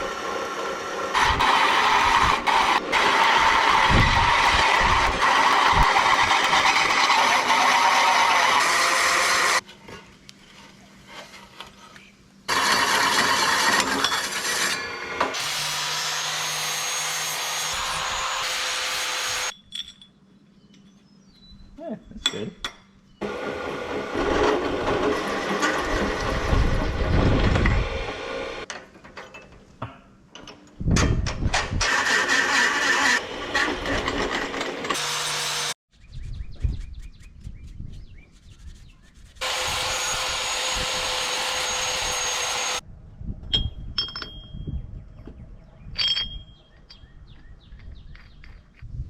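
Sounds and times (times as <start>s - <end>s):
power drill whining under load: 0.0s - 9.6s, 12.5s - 14.1s, 14.8s - 19.5s, 31.8s - 35.8s, 39.4s - 42.8s.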